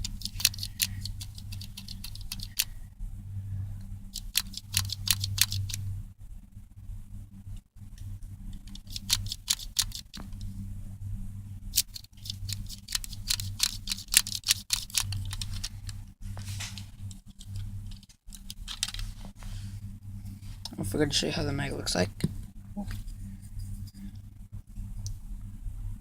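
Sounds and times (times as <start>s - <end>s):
plastic clicks and rattles: 0.0s - 2.7s, 4.2s - 5.8s, 8.6s - 10.5s, 11.8s - 16.0s, 16.7s - 19.1s
steady low hum: 0.0s - 26.0s.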